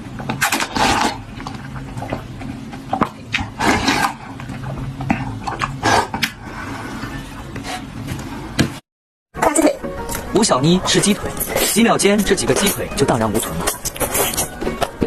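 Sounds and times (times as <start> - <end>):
person eating noisily: 0.0 - 8.0, 11.0 - 15.0.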